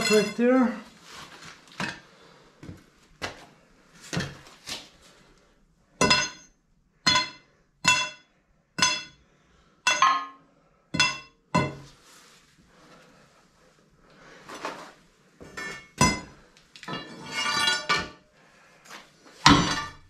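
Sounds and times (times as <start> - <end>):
hammer striking steel: 6.0 - 6.5, 7.1 - 9.2, 9.9 - 10.4, 11.0 - 11.8.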